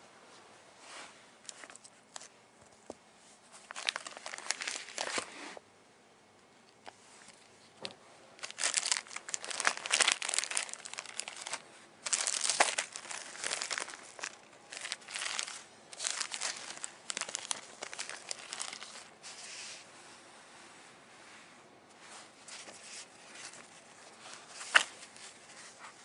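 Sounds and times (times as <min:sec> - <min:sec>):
packaging crinkling: 0:03.6 - 0:05.3, 0:08.4 - 0:19.2, 0:24.3 - 0:25.5.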